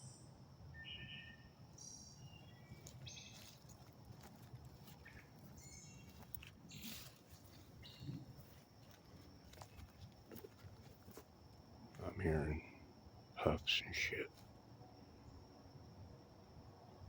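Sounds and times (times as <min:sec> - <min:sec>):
birds chirping: 0:00.8 - 0:03.8, 0:04.8 - 0:08.6.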